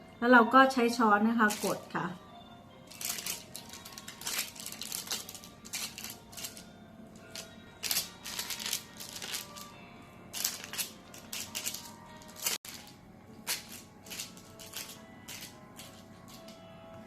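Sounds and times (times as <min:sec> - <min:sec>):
soft background music: 0:00.0 - 0:17.0
paper crinkling: 0:02.9 - 0:06.6, 0:07.3 - 0:09.7, 0:10.3 - 0:12.9, 0:13.5 - 0:16.6.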